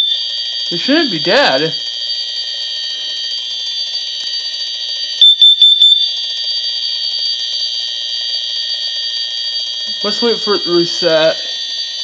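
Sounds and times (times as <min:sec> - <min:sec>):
smoke alarms sounding: 0:00.0 - 0:12.0
loud high beeps: 0:05.2 - 0:06.1.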